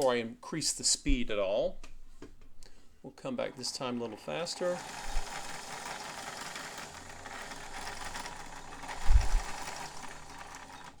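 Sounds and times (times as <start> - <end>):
sewing machine running: 3.6 - 11.0.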